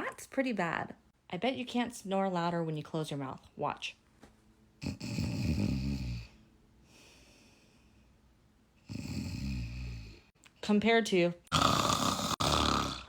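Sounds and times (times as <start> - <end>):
person snoring: 4.8 - 6.4, 8.9 - 10.3, 11.5 - 13.0.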